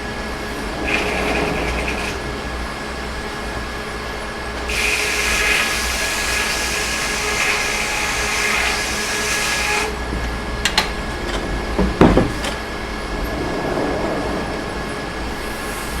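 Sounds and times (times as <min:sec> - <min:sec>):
sawmill machinery humming: 0:00.0 - 0:16.0
heavy clank: 0:10.0 - 0:12.8.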